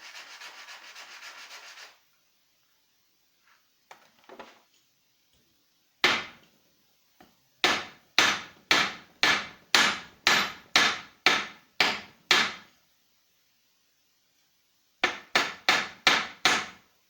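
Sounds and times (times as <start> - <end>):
hammer strikes: 6.0 - 6.4, 7.6 - 12.6, 15.0 - 16.7.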